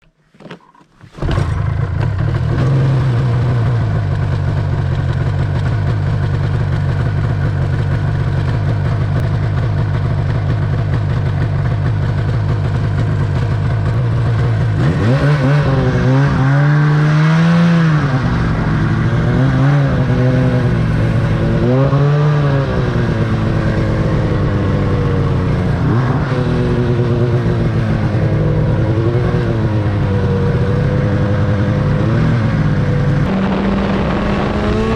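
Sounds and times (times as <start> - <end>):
snowmobile engine revving: 1.2 - 4.2, 12.4 - 34.9.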